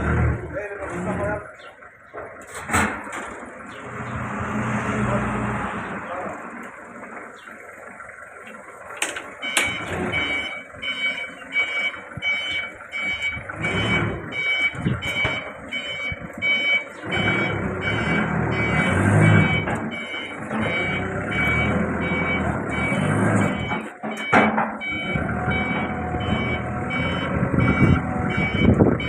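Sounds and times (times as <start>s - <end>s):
electronic warning beeps: 9.4s - 29.0s.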